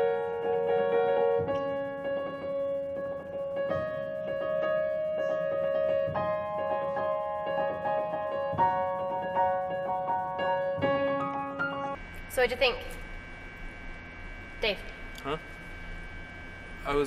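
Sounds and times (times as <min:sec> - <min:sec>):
keyboard playing held chords: 0:00.0 - 0:12.0.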